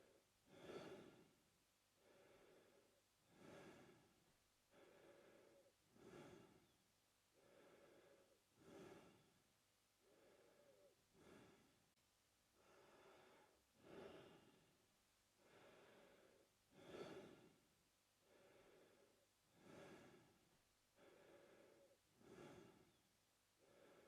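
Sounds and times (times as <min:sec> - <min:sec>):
man breathing through mouth: 0:00.5 - 0:01.3, 0:02.0 - 0:04.1, 0:04.7 - 0:06.8, 0:07.4 - 0:09.3, 0:10.0 - 0:11.8, 0:12.6 - 0:14.6, 0:15.4 - 0:17.6, 0:18.3 - 0:20.4, 0:21.0 - 0:22.9.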